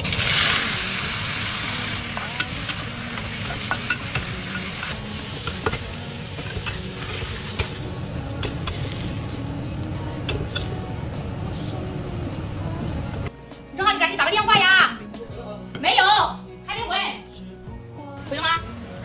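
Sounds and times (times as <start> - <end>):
food sizzling in a hot pan: 0.0 - 13.2
spatula scraping a pan: 1.6 - 10.8.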